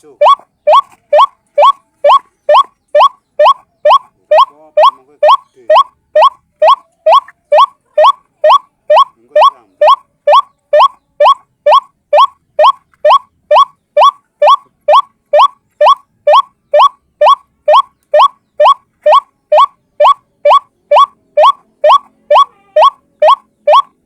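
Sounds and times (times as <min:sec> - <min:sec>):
waterhen calling: 0:00.0 - 0:24.0.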